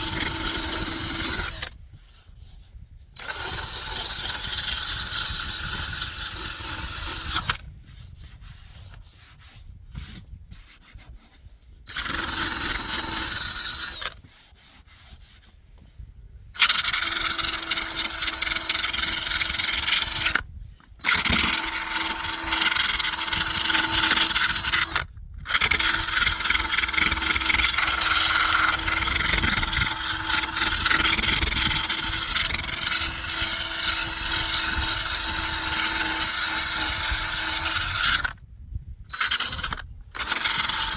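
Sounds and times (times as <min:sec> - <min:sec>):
power sander sanding fiberglass: 0:25.6 - 0:38.3.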